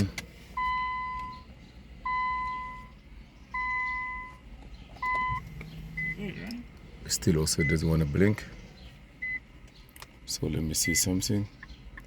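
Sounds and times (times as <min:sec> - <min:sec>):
electronic beeps: 0:05.0 - 0:06.4, 0:09.2 - 0:09.4.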